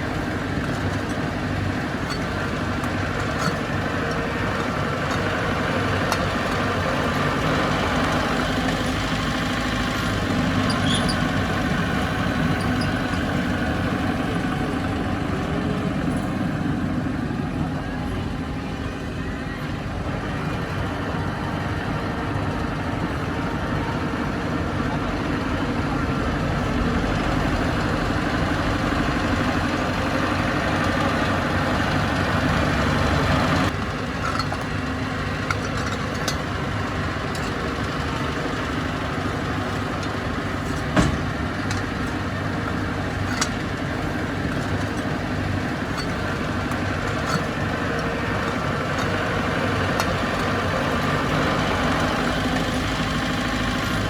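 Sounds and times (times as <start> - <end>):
diesel engine running: 0.0 - 54.0.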